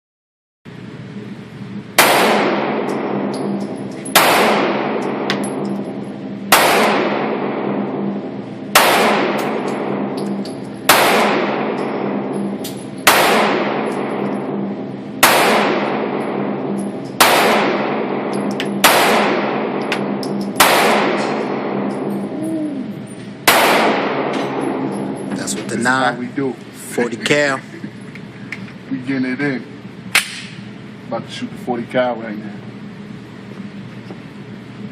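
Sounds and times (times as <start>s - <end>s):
pistol shots echoing: 2.0s - 22.3s, 23.4s - 25.2s.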